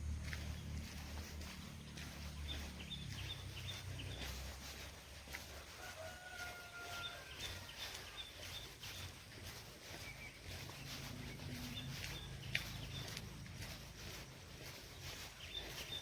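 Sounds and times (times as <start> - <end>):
low rumble: 0.0 - 5.0
birds chirping: 0.0 - 16.0.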